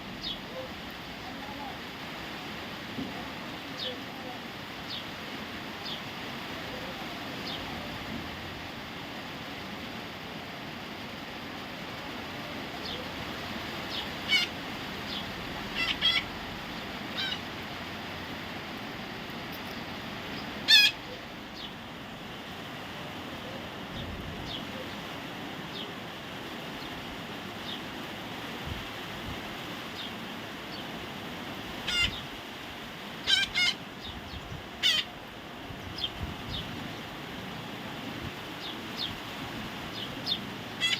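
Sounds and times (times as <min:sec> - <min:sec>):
steady background hiss: 0:00.0 - 0:40.9
parrot squawking: 0:13.9 - 0:16.4, 0:17.1 - 0:17.6, 0:20.6 - 0:21.2, 0:31.8 - 0:32.2, 0:33.2 - 0:33.8, 0:34.8 - 0:35.2, 0:40.3 - 0:40.9.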